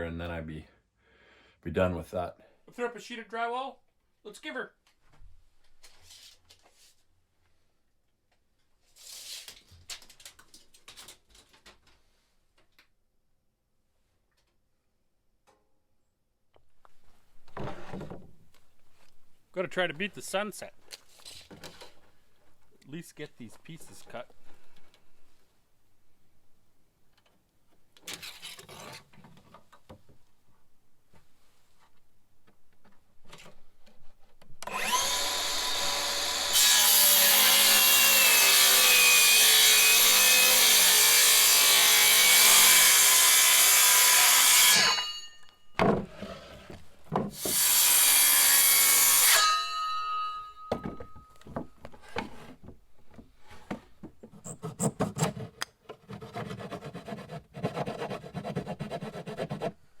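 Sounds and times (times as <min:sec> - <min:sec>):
wood pieces scraping and knocking: 0:17.4 - 0:18.7, 0:50.6 - 0:56.6
circular saw cutting wood: 0:34.6 - 0:45.4, 0:47.3 - 0:50.8.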